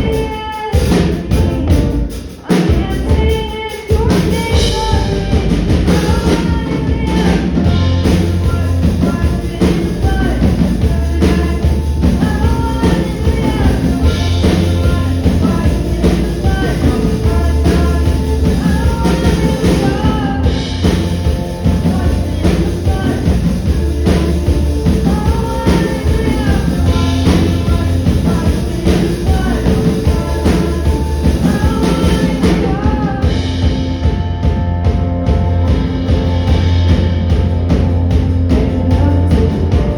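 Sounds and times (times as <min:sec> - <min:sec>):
person singing: 0:00.0 - 0:37.4, 0:38.4 - 0:39.9
live rock band playing: 0:00.0 - 0:39.9.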